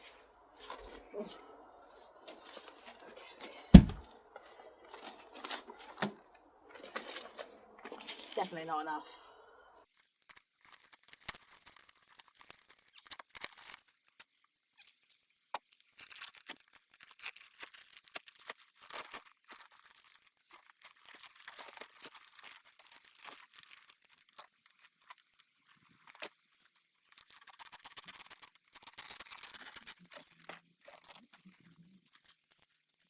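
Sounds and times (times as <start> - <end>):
plastic sheeting crinkling: 0.0 - 9.2.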